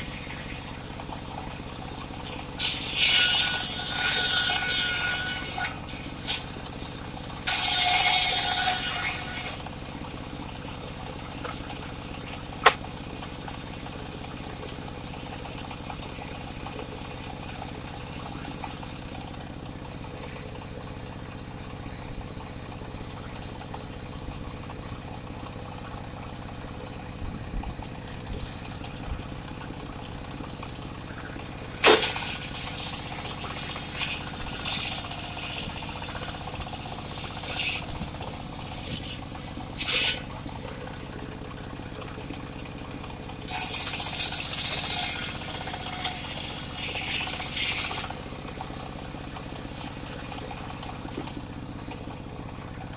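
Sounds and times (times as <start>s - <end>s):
low running hum: 0.0s - 52.9s
circular saw cutting wood: 2.2s - 6.5s, 7.5s - 9.6s, 31.3s - 39.2s, 43.5s - 48.2s.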